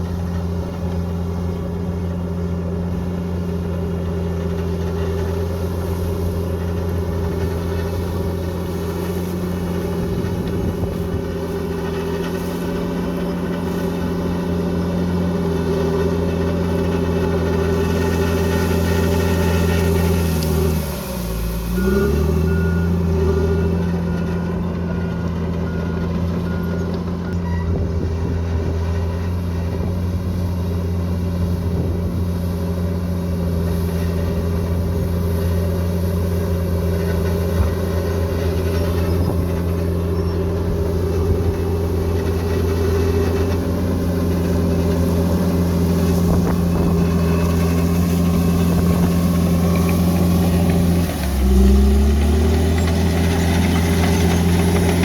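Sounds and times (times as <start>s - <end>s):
bulldozer diesel engine running: 0.0s - 55.0s
reversing beeps: 21.7s - 27.9s.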